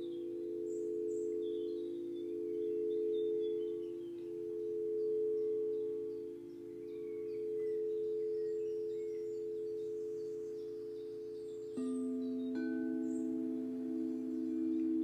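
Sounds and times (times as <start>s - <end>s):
faint high bird chirps: 0.0s - 15.0s
singing bowls droning: 0.0s - 15.0s.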